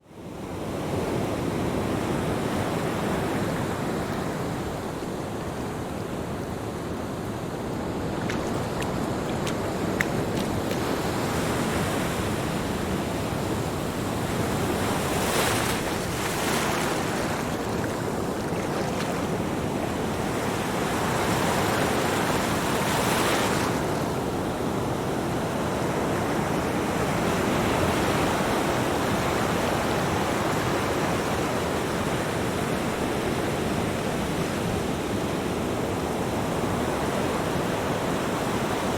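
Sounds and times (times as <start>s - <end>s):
ocean waves breaking: 1.4s - 24.5s.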